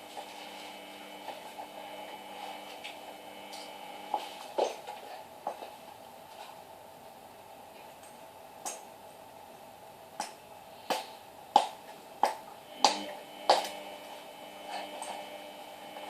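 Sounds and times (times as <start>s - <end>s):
washing machine spinning: 0.0s - 7.6s, 11.5s - 16.0s.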